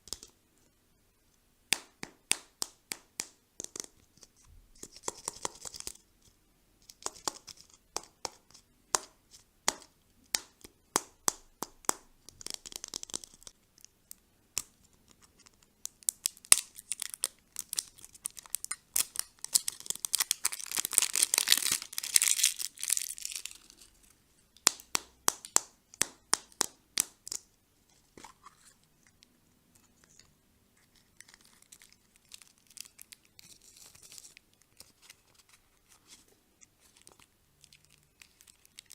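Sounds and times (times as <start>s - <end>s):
candy wrapper crinkling: 12.2s - 24.8s, 28.1s - 38.9s.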